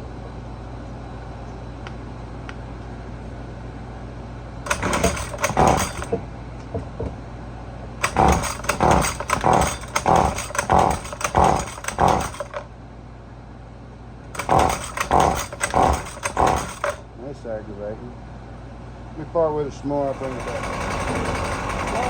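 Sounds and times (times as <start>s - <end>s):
starter cord being pulled: 4.7s - 6.2s, 8.0s - 12.7s, 14.4s - 17.0s.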